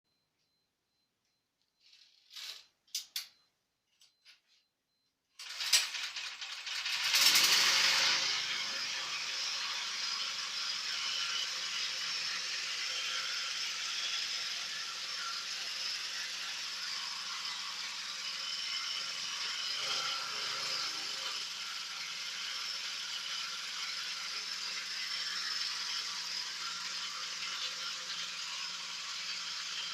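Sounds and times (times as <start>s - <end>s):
small metallic clicks and clinks: 1.9s - 4.4s
food grinding machine running: 5.4s - 29.9s.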